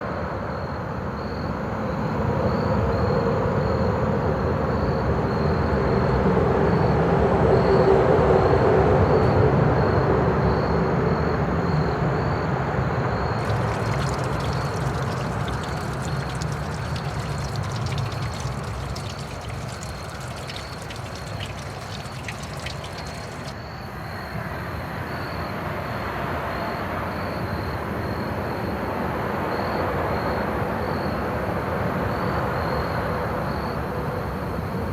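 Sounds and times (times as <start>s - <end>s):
insects trilling: 13.4s - 23.6s.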